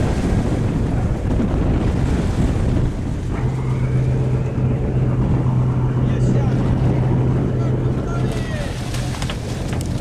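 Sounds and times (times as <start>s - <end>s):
low engine hum: 0.0s - 10.0s
water rushing around boat: 0.0s - 10.0s
wind buffeting microphone: 0.0s - 10.0s.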